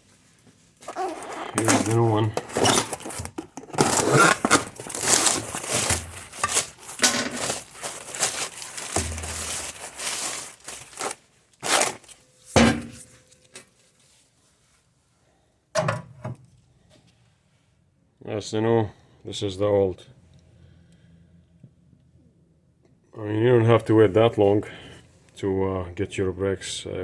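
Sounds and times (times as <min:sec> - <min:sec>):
handling clatter: 0:00.9 - 0:11.2
packaging crinkling and tearing: 0:00.9 - 0:12.2.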